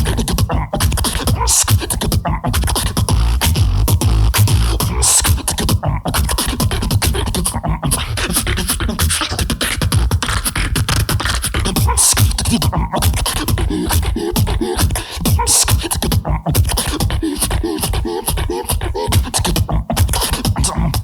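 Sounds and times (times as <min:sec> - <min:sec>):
deep bass: 0:00.0 - 0:07.7
beatboxing into a microphone: 0:00.0 - 0:21.0.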